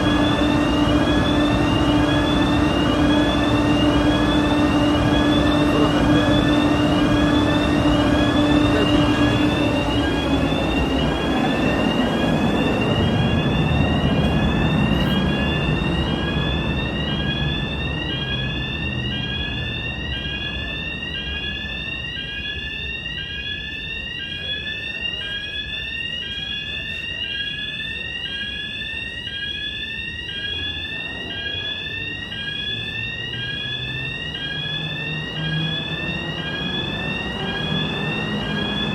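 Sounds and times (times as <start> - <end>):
low hum: 0.0 - 16.8
fire alarm electronic sweeps: 0.0 - 38.9.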